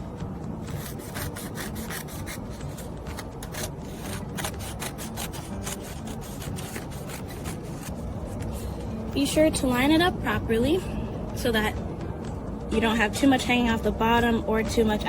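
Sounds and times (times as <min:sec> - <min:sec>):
paper rubbing and rasping: 0:00.6 - 0:08.7.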